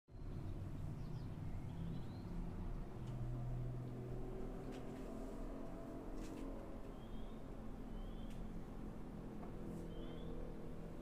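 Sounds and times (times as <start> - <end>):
faint bird chirps and whistles: 6.9 - 8.5, 9.8 - 10.4.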